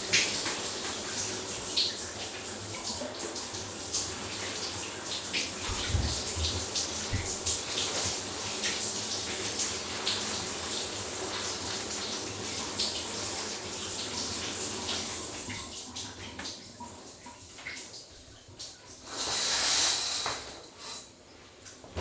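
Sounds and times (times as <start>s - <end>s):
water dripping: 0.0s - 19.1s
shower water running: 0.0s - 22.0s
loud hiss: 19.1s - 21.0s.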